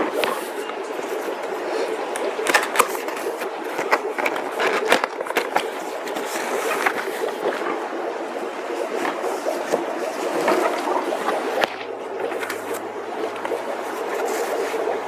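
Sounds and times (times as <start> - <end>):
cardboard scraping and rustling: 2.5 - 7.8, 9.0 - 14.8.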